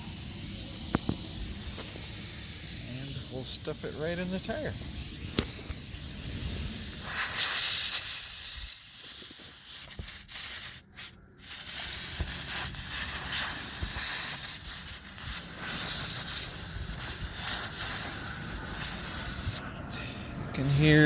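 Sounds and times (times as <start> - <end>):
air hissing out of tire: 0.0 - 19.6, 20.6 - 21.0.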